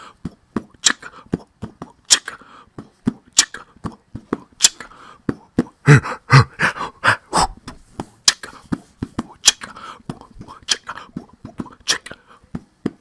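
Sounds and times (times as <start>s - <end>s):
beatboxed snare clicks: 0.3s - 3.7s, 4.3s - 5.7s, 8.2s - 8.6s, 9.2s - 13.0s.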